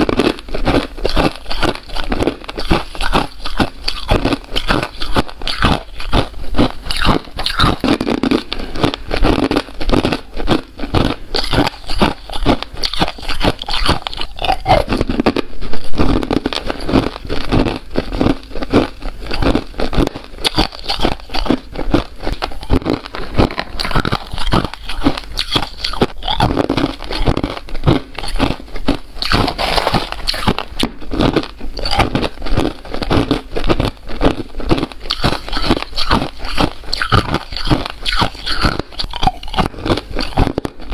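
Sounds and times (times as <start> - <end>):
ice being crunched: 22.2 - 33.8.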